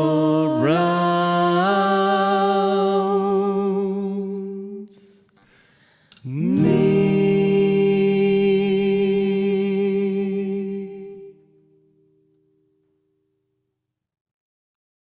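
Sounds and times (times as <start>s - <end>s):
two voices singing in harmony: 0.0s - 11.9s.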